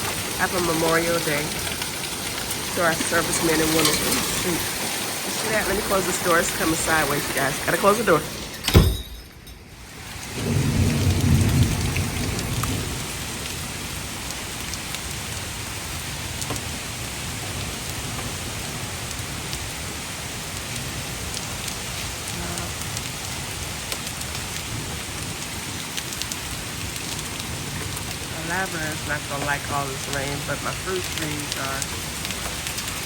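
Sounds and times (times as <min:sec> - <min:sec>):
heavy rain pouring: 0:00.0 - 0:33.0
low rumble of thunder: 0:10.1 - 0:14.7.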